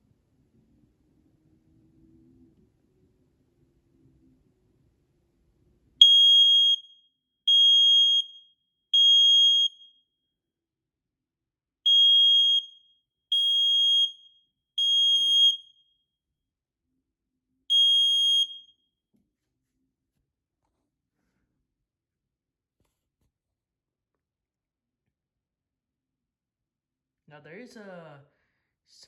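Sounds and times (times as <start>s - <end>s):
smoke alarm high-pitched beeps: 6.0s - 10.1s, 11.9s - 16.0s, 17.7s - 18.8s.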